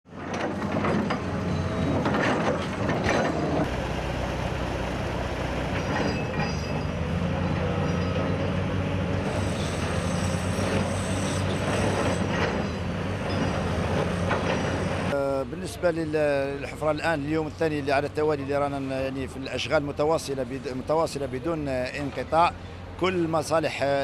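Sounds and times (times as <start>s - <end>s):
metal clanks and squeals: 0.1s - 3.7s, 5.7s - 15.2s
diesel engine drone: 0.1s - 24.0s.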